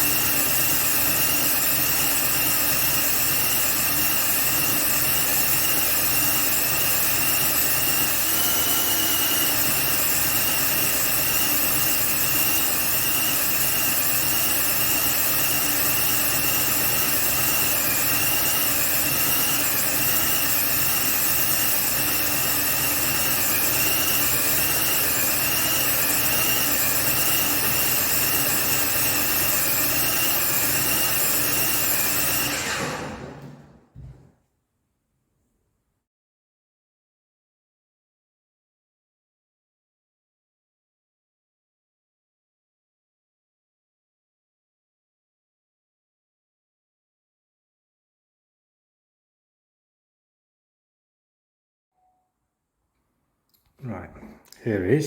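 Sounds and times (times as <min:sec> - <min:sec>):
paint sprayer motor whining: 0:00.0 - 0:34.3.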